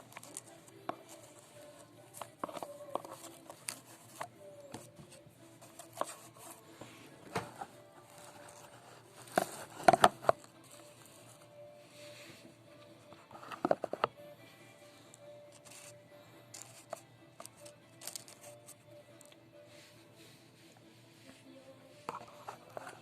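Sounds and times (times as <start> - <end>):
faint background music: 0.0 - 23.0
small objects clicking and knocking: 16.5 - 18.5.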